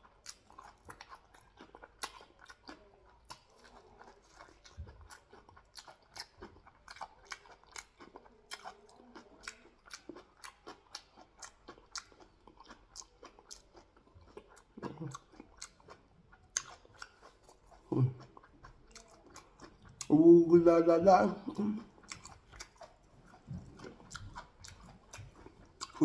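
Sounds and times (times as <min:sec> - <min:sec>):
person chewing food: 0:00.0 - 0:26.0.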